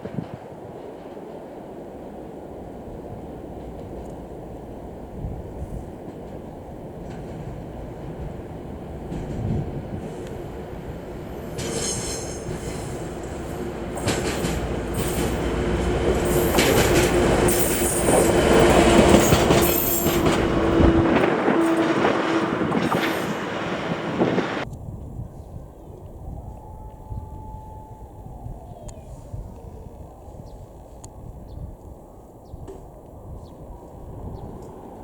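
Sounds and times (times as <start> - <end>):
train passing: 0.0 - 24.7
wheels clattering over rail joints: 5.9 - 24.6.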